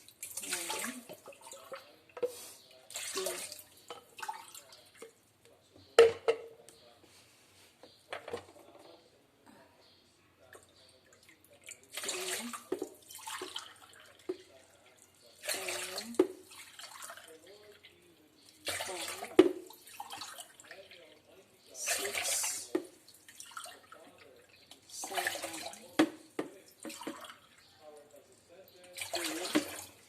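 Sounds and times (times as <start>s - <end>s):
water pouring and gurgling: 0.0s - 2.0s, 2.9s - 5.0s, 11.5s - 14.6s, 15.3s - 18.0s, 21.7s - 26.0s, 28.8s - 30.0s
cup clinking against pot: 6.0s - 6.6s.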